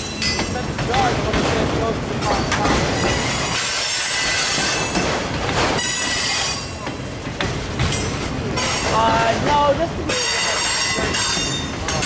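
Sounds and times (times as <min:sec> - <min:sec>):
rumble and clatter of train cars: 0:00.0 - 0:12.0
train wheels squealing: 0:03.0 - 0:05.1, 0:05.8 - 0:06.9, 0:08.6 - 0:09.2, 0:10.1 - 0:12.0.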